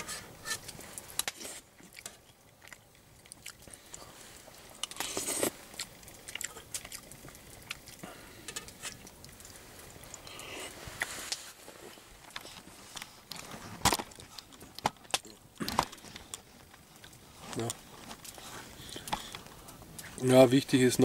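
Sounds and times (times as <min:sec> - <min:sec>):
spoon scraping on a plate: 0:00.0 - 0:00.7
person chewing: 0:00.1 - 0:13.5
rustling: 0:03.7 - 0:20.5.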